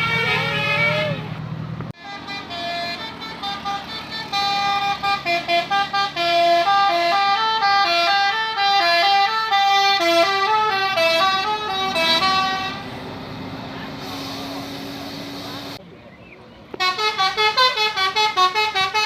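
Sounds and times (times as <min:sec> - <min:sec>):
bus horn playing a tune: 0:00.0 - 0:01.4, 0:02.0 - 0:13.0, 0:16.7 - 0:19.0.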